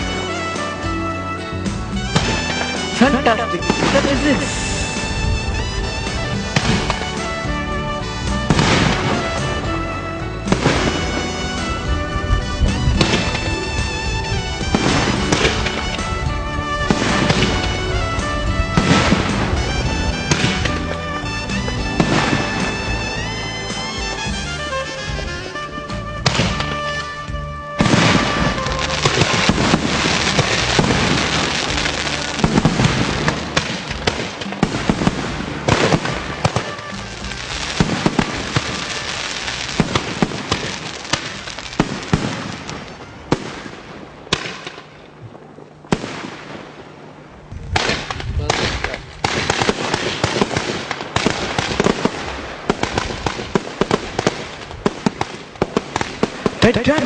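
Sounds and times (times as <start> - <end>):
fireworks crackling and popping: 0.0 - 57.0
steady hiss: 0.0 - 57.0.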